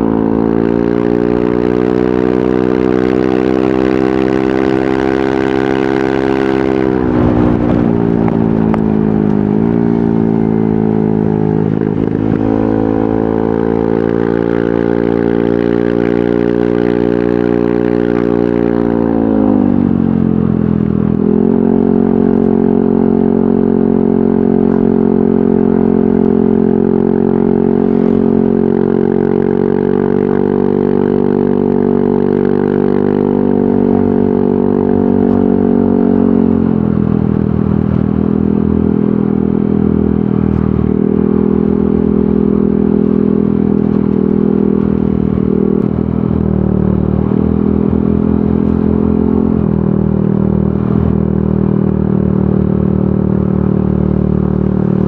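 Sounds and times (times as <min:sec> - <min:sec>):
scooter engine running: 0:00.0 - 0:55.0.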